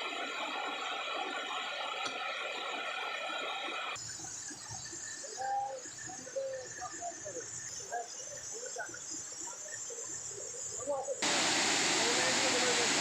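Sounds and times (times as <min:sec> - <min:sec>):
stream hissing: 0:11.2 - 0:13.0.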